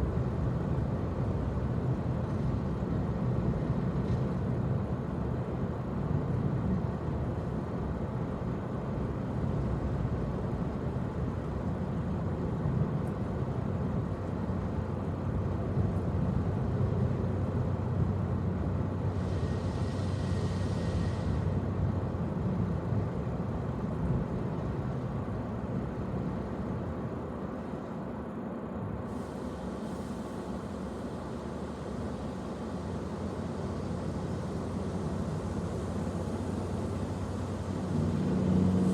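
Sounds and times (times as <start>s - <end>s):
hiss: 19.0s - 21.7s, 29.0s - 38.9s.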